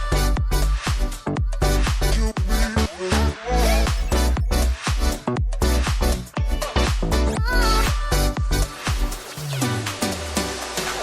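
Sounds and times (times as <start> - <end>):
kick drum: 0.0 - 2.8, 3.9 - 9.3
electronic dance music: 0.0 - 11.0.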